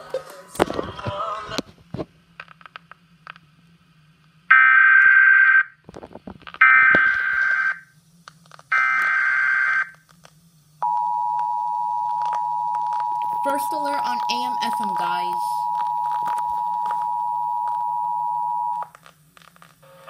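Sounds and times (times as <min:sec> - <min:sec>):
two-tone attention signal: 0:10.8 - 0:18.8.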